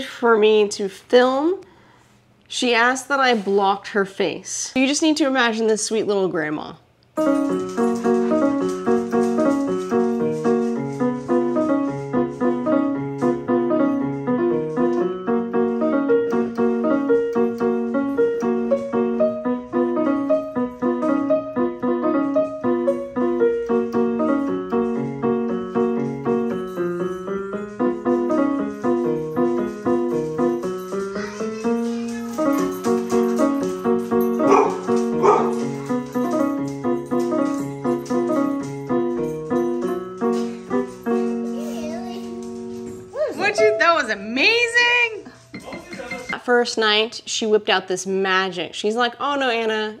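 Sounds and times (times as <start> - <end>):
piano playing quick repeating notes: 7.2 - 46.6.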